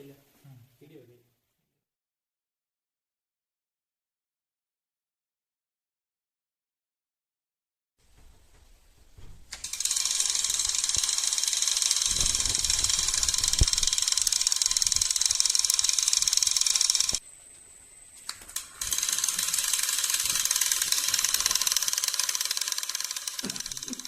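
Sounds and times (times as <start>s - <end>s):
small clicks: 9.5s - 17.2s, 18.2s - 24.0s
door alarm buzzer: 9.6s - 17.2s, 18.8s - 24.0s.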